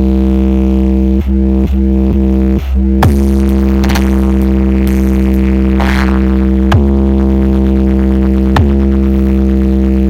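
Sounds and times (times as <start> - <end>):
droning bass hum: 0.0 - 10.0
remix music played loud: 0.1 - 10.0
sharp hit: 3.3 - 6.4.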